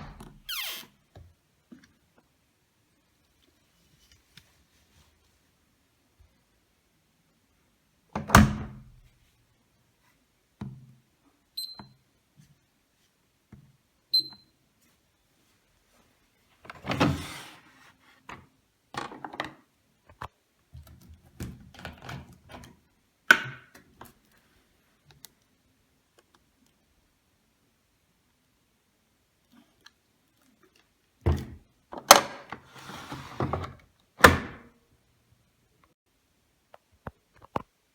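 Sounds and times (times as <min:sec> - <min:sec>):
washing machine short high beeps: 0:14.1 - 0:14.5.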